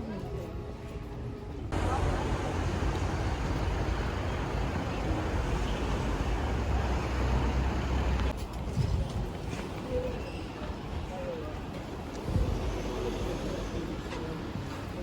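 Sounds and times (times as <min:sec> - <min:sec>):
low vehicle rumble: 0:01.7 - 0:08.3.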